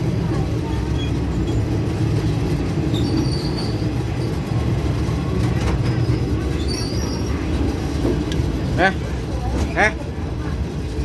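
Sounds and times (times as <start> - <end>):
train wheels rumbling: 0.0 - 11.0
high-pitched wheel squeals: 2.9 - 4.4, 6.0 - 7.6.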